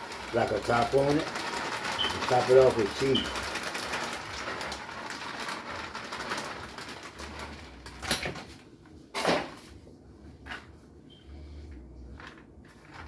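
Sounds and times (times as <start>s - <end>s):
cheese rustling: 0.0s - 8.8s.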